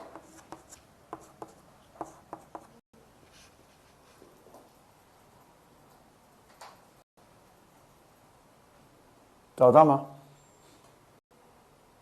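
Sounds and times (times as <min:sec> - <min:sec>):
pen strokes and taps: 0:00.0 - 0:04.8.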